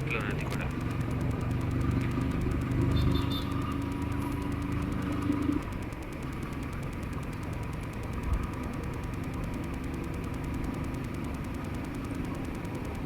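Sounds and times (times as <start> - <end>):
motorcycle engine rumbling: 0.0 - 13.0.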